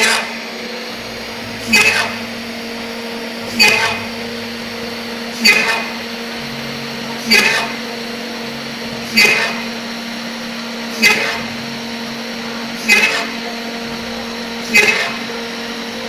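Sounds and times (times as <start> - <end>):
cutting tool screech: 0.0 - 16.0
spindle motor humming: 0.0 - 16.0.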